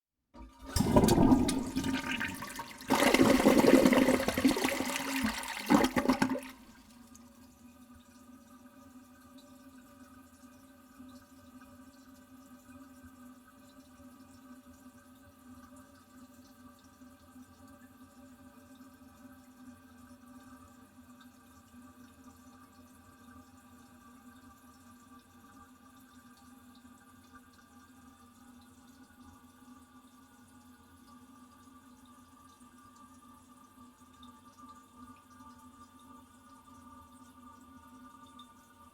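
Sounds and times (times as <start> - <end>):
toilet flushing: 0.4 - 7.1
toilet tank refilling hum: 0.4 - 13.0, 19.2 - 38.9.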